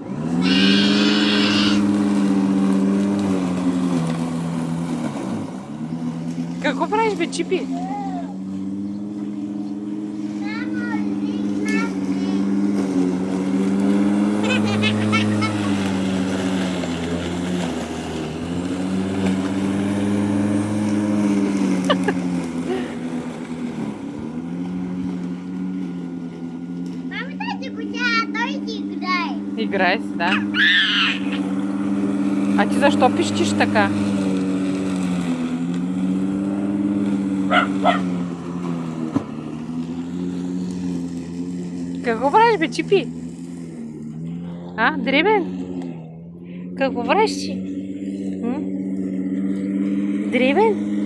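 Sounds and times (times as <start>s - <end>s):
engine drone: 0.0s - 51.0s
low mechanical hum: 0.0s - 51.0s
puppy yipping: 30.3s - 31.5s, 37.5s - 38.1s.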